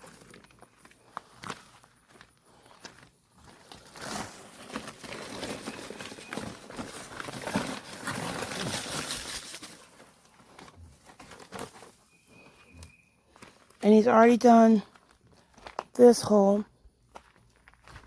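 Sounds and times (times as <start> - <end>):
dry concrete mix pouring: 5.0 - 9.8.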